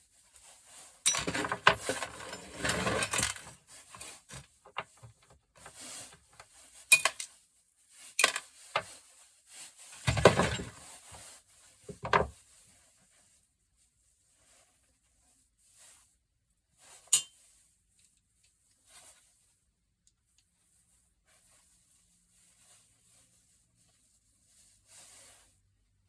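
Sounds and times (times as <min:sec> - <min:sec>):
metal parts clinking: 0:01.1 - 0:04.4.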